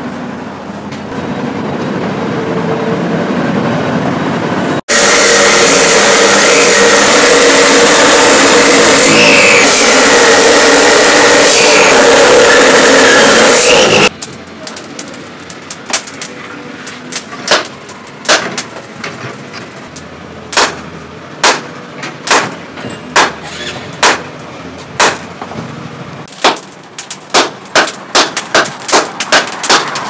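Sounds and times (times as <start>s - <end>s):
hammer striking steel: 20.5s - 24.4s, 25.0s - 25.3s, 26.3s - 30.0s.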